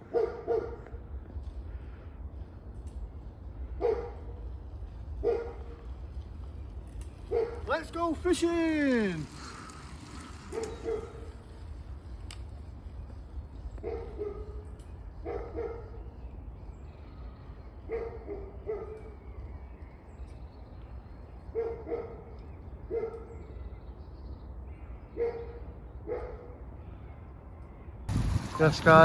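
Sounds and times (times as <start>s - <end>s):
dog barking: 0.1s - 0.9s, 3.8s - 4.3s, 5.2s - 5.7s, 7.3s - 7.6s, 10.5s - 11.2s, 13.8s - 14.6s, 15.2s - 16.0s, 17.9s - 19.0s, 21.5s - 22.3s, 22.9s - 23.3s, 25.2s - 26.6s
steady low rumble: 28.1s - 29.0s.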